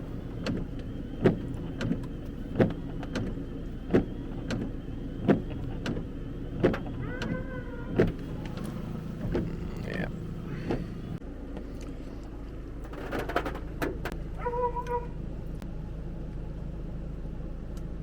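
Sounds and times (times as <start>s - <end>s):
truck engine running: 0.0s - 18.0s
puppy barking: 14.4s - 15.2s
puppy whining: 14.4s - 15.2s.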